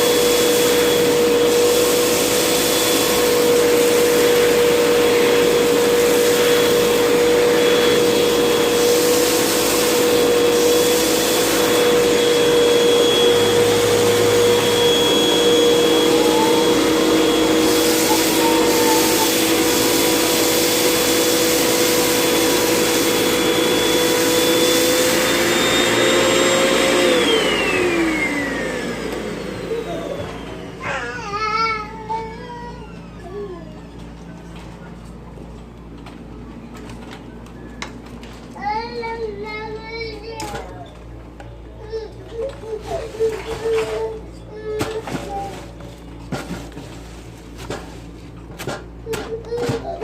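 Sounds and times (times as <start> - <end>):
vacuum cleaner motor whine: 0.0 - 38.8, 42.5 - 48.9.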